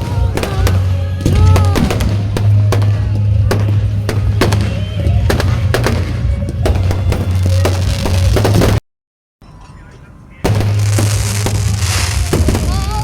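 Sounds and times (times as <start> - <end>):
fireworks bangs and crackles: 0.0 - 8.8, 10.4 - 13.0
music: 0.0 - 8.8, 9.5 - 13.0.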